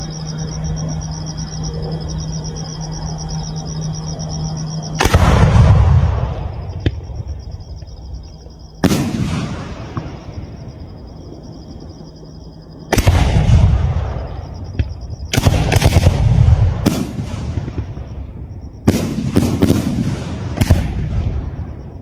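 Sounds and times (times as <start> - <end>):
sharp firework crack: 5.0 - 7.1, 8.8 - 10.2, 12.9 - 14.0, 14.8 - 18.0, 18.9 - 21.4
firework bangs with rumbling echo: 8.8 - 10.8, 12.9 - 21.8.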